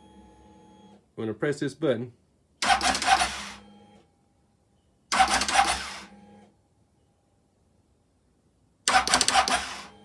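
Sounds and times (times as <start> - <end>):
starter solenoid clicking rapidly: 2.6 - 3.5, 5.1 - 6.0, 8.9 - 9.9.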